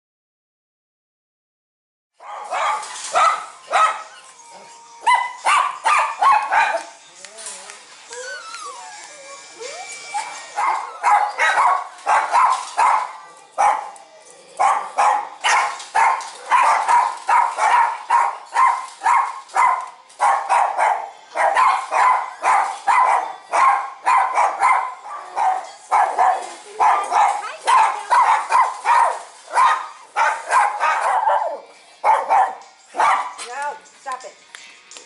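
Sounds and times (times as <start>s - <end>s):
dogs barking: 2.2s - 4.4s, 5.0s - 7.0s, 10.0s - 14.0s, 14.6s - 33.5s.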